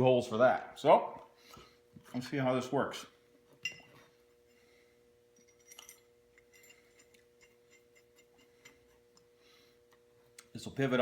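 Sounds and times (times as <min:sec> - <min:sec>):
steady low hum: 0:00.0 - 0:11.0
steel parts clinking: 0:05.4 - 0:08.8.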